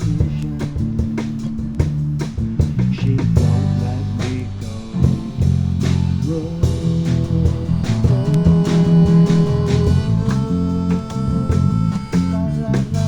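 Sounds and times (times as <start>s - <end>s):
bass guitar: 0.0s - 13.0s
drums: 0.0s - 13.0s
guitar: 0.0s - 13.0s
held melody note: 3.6s - 13.0s.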